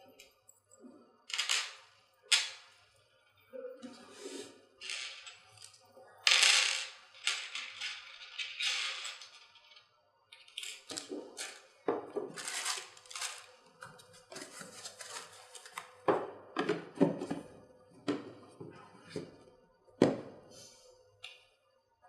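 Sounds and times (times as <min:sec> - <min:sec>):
packaging rustling: 0:12.3 - 0:13.5, 0:14.2 - 0:16.0.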